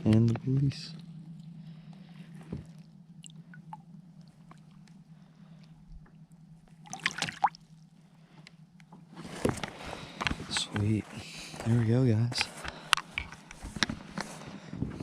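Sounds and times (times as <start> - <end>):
faint low hum: 0.0 - 15.0
water drips and trickles: 6.7 - 7.7
water splashing: 6.7 - 7.8.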